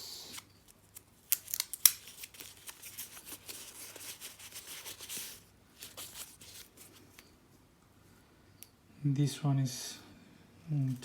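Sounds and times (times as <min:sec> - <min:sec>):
packaging clicks and snaps: 0:00.3 - 0:05.3
packaging crinkling and rustling: 0:00.3 - 0:07.2.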